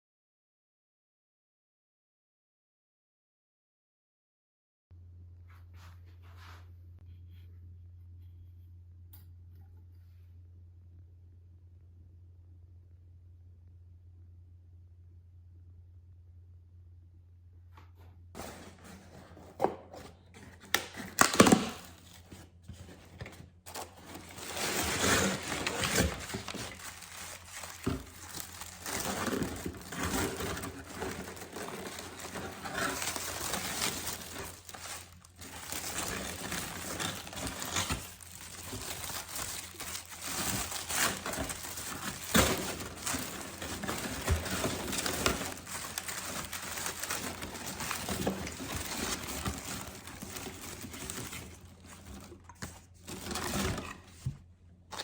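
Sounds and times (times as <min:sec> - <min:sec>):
packaging crinkling: 0:18.4 - 0:54.3.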